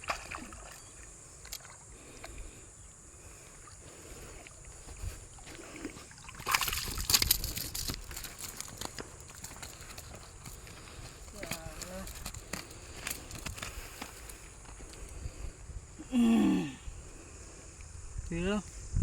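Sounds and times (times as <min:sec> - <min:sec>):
water sloshing and splashing: 0:00.0 - 0:02.5, 0:03.3 - 0:14.2.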